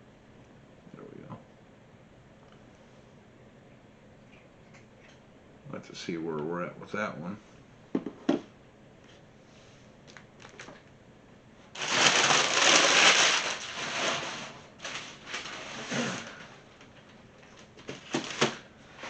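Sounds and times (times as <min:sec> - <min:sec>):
packing paper crinkling: 0:10.1 - 0:10.8, 0:11.8 - 0:19.0.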